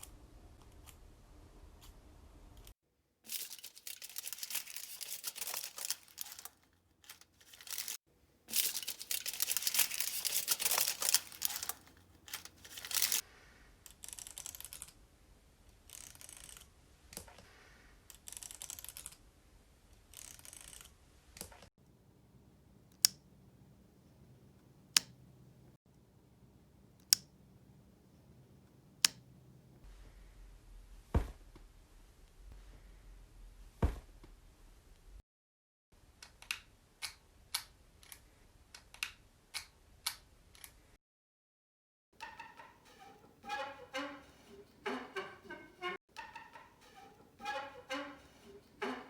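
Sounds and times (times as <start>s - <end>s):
foley crackling and rustling: 3.3s - 13.2s.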